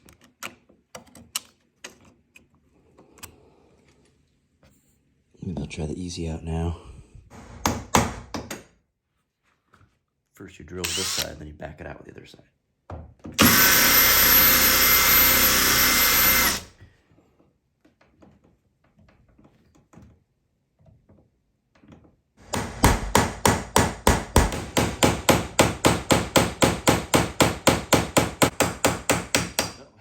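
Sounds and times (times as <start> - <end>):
cordless drill boring into screw: 10.8 - 11.4, 13.4 - 16.7
rapid hammer blows: 22.4 - 29.7.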